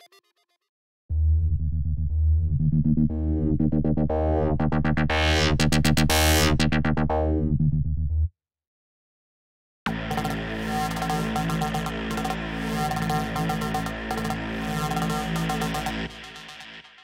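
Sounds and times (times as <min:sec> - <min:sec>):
steady synth bass: 0:01.1 - 0:08.3, 0:09.9 - 0:16.9
synthesizer repeating note pattern: 0:01.8 - 0:07.6, 0:09.9 - 0:17.0.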